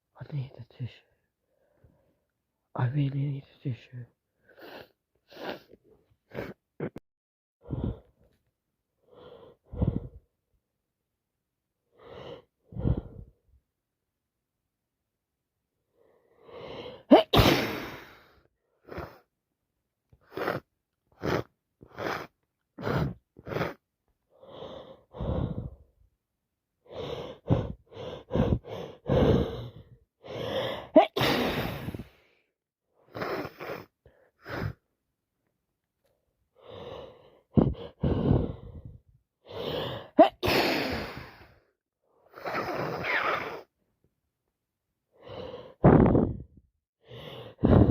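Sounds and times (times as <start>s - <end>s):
woman sneezing: 17.1s - 18.2s, 30.9s - 32.0s, 40.2s - 41.4s
sniffs and short breaths: 20.2s - 25.9s, 26.9s - 32.4s, 36.6s - 41.6s, 45.2s - 47.9s
sharp gasping in-breath: 24.4s - 25.9s, 26.9s - 32.4s, 36.6s - 41.6s, 45.2s - 47.9s.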